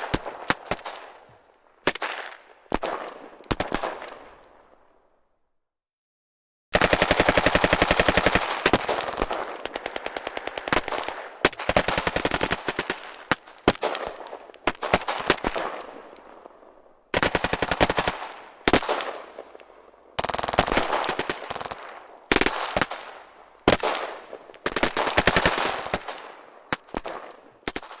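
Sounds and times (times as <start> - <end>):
automatic machine-gun fire: 6.8 - 15.9, 17.2 - 19.3, 20.2 - 23.1, 23.7 - 26.2.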